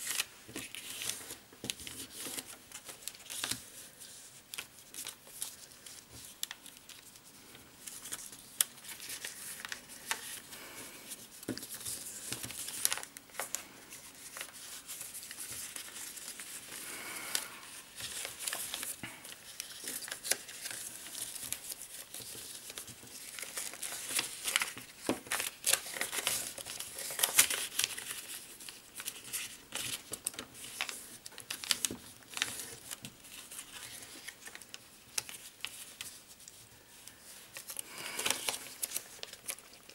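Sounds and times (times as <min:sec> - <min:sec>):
paper crinkling and rustling: 0:00.0 - 0:39.9
paper folds clicking: 0:11.4 - 0:16.6, 0:17.2 - 0:39.9.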